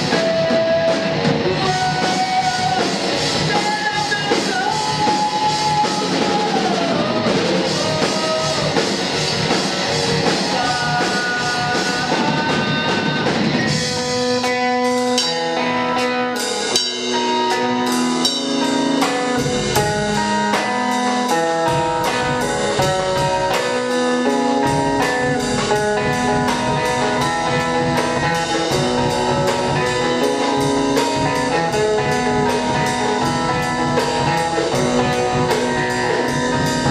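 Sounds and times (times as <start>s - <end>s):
gliding lead guitar line: 0.0s - 36.9s
live rock band playing: 0.0s - 36.9s.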